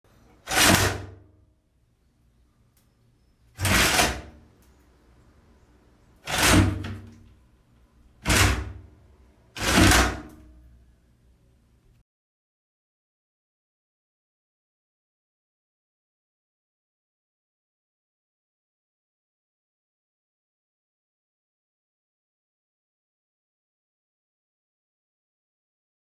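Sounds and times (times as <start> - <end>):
old window opening and shutting: 0.3 - 1.2, 3.5 - 4.4, 6.2 - 7.2, 8.2 - 8.9, 9.5 - 10.5.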